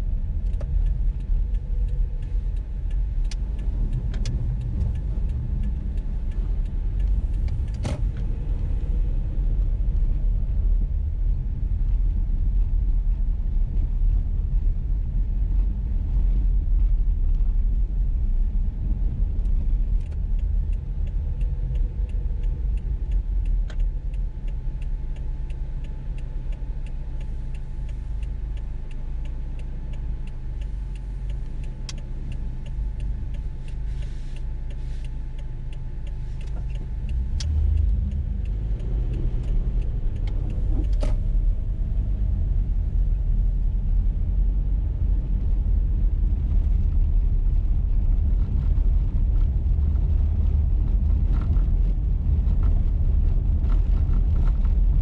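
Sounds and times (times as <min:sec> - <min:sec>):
engine and tyres rumbling: 0:00.0 - 0:55.0
faint fast ticking: 0:19.9 - 0:42.1.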